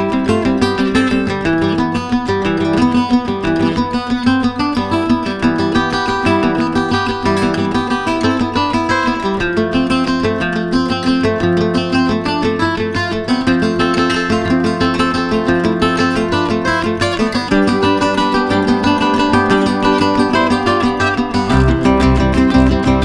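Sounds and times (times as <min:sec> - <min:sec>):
strummed acoustic guitar chords: 0:00.0 - 0:23.0
deep bass notes: 0:21.5 - 0:23.0.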